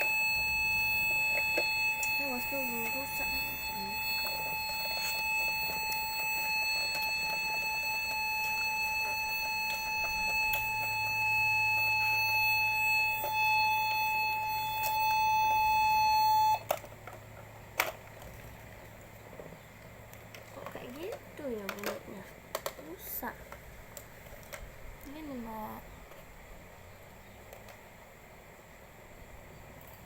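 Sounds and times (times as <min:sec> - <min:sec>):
toy speaker steady beep: 0:00.0 - 0:16.7.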